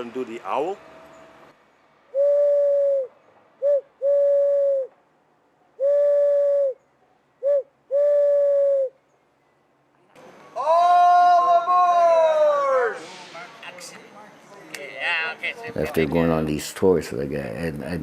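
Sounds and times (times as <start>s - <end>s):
person imitating owl hoots: 2.2s - 4.9s, 5.8s - 6.8s, 7.4s - 8.9s.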